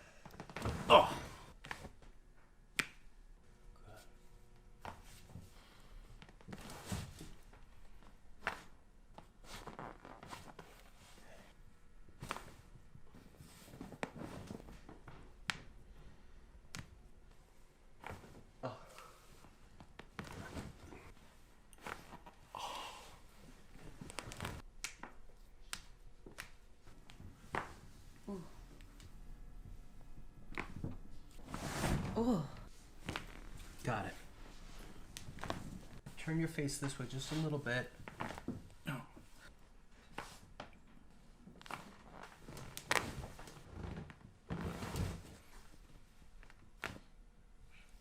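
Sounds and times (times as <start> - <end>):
breathy exhale: 22.5 - 23.3.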